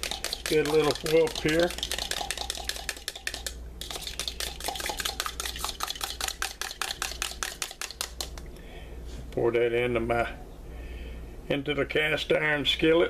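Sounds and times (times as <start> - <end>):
egg being whisked by hand: 0.0 - 8.5
whisk clicking against container: 0.0 - 8.5.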